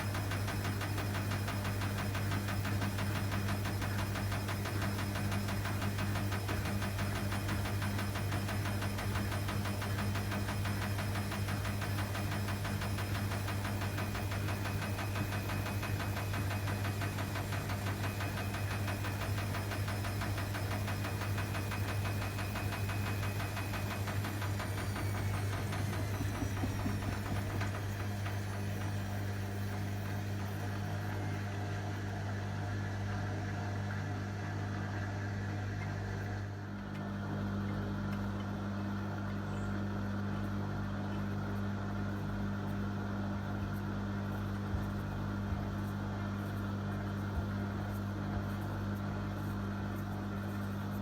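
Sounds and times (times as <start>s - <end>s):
washing machine drum rattle: 0.0s - 31.0s
washing machine motor hum: 0.0s - 51.0s.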